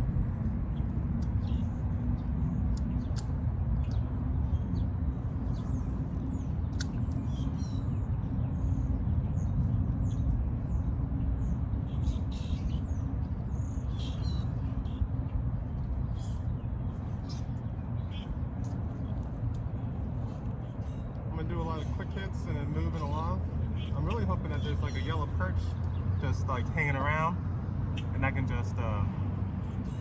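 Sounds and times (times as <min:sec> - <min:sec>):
low outdoor rumble: 0:00.0 - 0:30.0
small birds chirping: 0:00.0 - 0:30.0.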